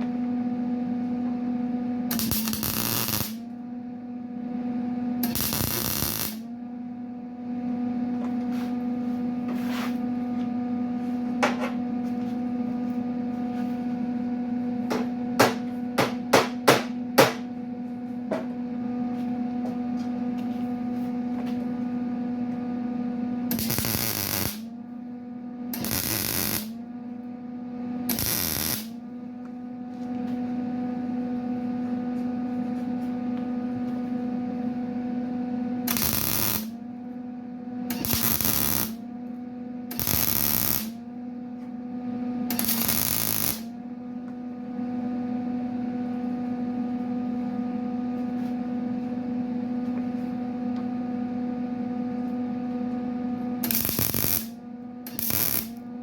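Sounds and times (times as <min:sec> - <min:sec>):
electrical hum: 0:00.0 - 0:56.0
welding crackle: 0:02.1 - 0:03.4, 0:05.2 - 0:06.4, 0:23.5 - 0:24.6, 0:25.8 - 0:26.7, 0:28.1 - 0:28.9, 0:35.9 - 0:36.7, 0:37.9 - 0:39.0, 0:39.9 - 0:40.9, 0:42.5 - 0:43.7, 0:53.6 - 0:54.5, 0:55.1 - 0:55.8.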